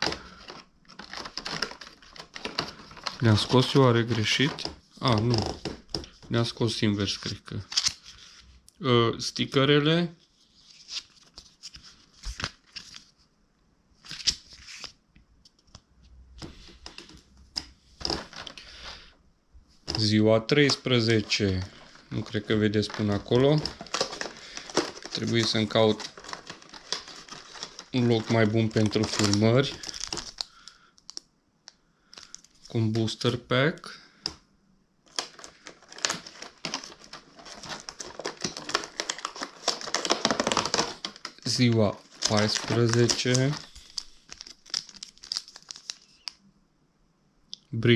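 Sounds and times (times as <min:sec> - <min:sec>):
cardboard packaging rustling and tearing: 0:00.0 - 0:06.5, 0:18.0 - 0:19.0, 0:19.9 - 0:31.2, 0:35.1 - 0:46.4.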